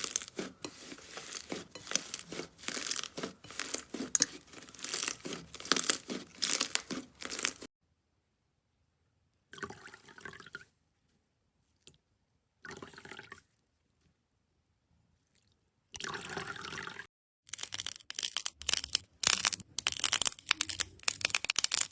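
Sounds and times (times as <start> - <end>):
slime crackling and popping: 0.0 - 7.7, 17.6 - 21.9
wet slime squishing: 0.0 - 7.7.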